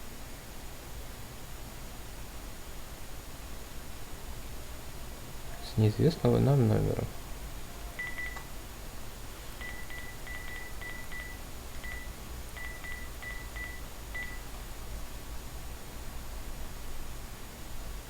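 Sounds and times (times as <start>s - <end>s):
phone keypad beeps: 8.0s - 8.5s, 9.6s - 14.4s.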